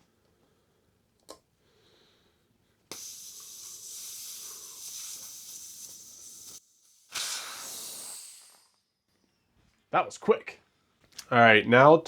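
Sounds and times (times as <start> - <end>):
air hissing out of tire: 2.9 - 9.0.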